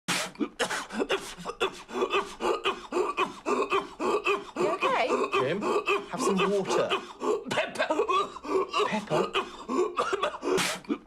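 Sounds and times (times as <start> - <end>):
gasping voice sounds: 0.2 - 11.0
man coughing: 0.4 - 11.0.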